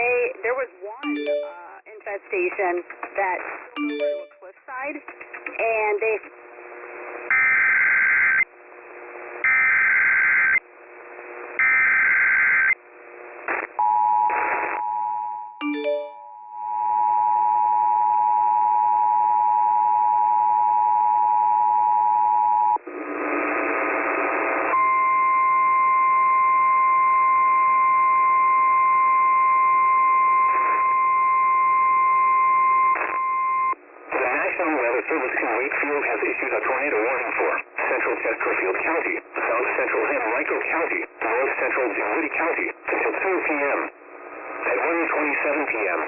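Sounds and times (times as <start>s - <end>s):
two-tone attention signal: 1.0s - 1.8s, 3.8s - 4.5s, 15.6s - 16.6s
steady single-pitch alarm tone: 14.9s - 22.7s.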